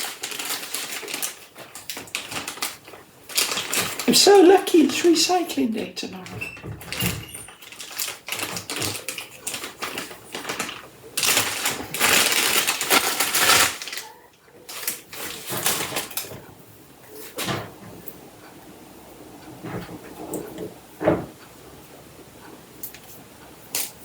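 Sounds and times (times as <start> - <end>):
packaging taps and clatters: 0.0 - 5.1, 6.8 - 14.1
packaging rustling and scraping: 0.0 - 5.2, 6.4 - 16.5.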